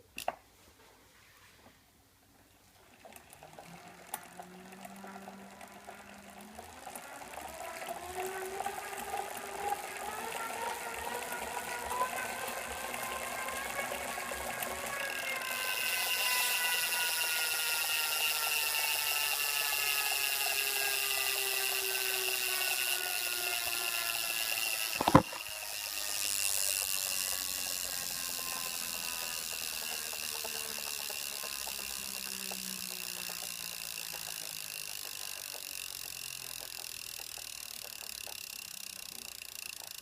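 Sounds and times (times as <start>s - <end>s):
flywheel spinning down whine: 2.7s - 40.0s
sharp click: 25.0s - 25.4s.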